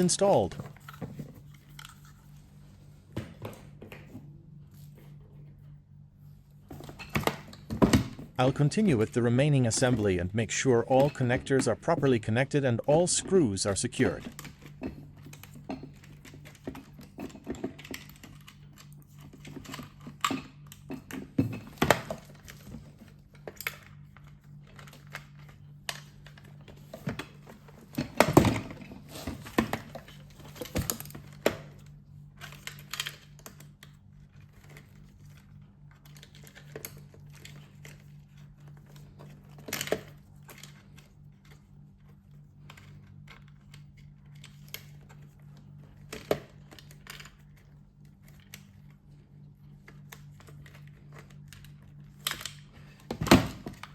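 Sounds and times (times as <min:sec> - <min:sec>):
faint steady hum: 0:00.0 - 0:53.9
plastic parts clicking and knocking: 0:13.3 - 0:49.0.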